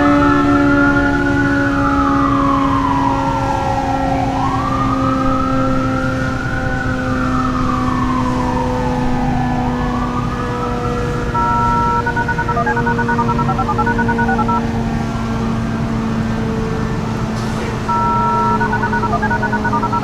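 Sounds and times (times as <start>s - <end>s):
warning siren wailing: 11.4s - 14.6s, 17.9s - 20.0s.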